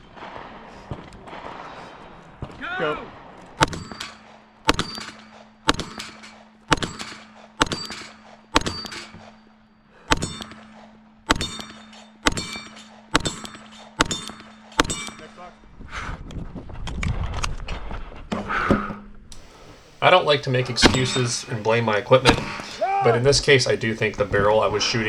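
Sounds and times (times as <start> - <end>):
pistol shots: 0.0 - 9.4, 19.4 - 25.0
steel target clanging: 19.4 - 25.0.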